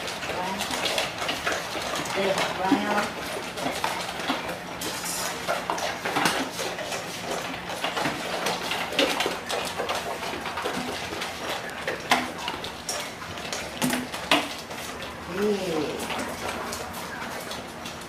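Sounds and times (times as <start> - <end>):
dog bowls clinking: 0.0 - 18.0.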